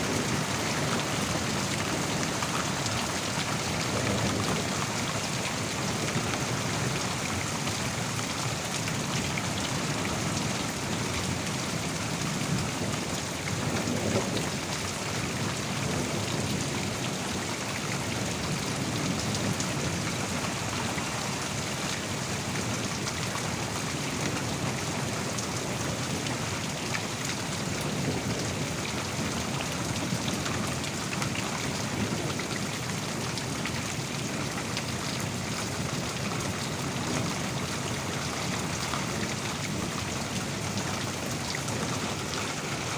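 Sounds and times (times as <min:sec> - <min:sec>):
low rumble of thunder: 0:00.0 - 0:07.5, 0:09.5 - 0:21.4, 0:27.5 - 0:31.1
heavy rain falling: 0:00.0 - 0:42.9.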